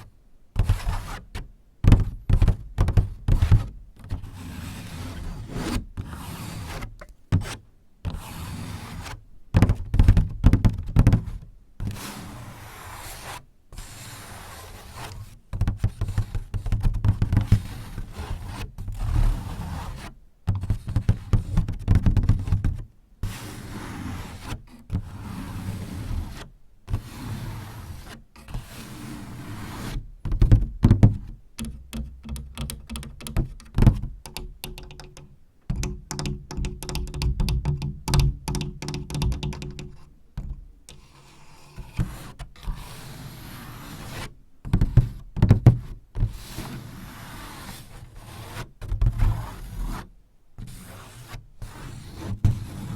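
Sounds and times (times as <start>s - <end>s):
scraping and rubbing paper: 0.6s - 37.5s
tapping on paper door: 1.8s - 3.7s, 9.5s - 11.3s, 30.2s - 40.6s, 44.7s - 45.8s.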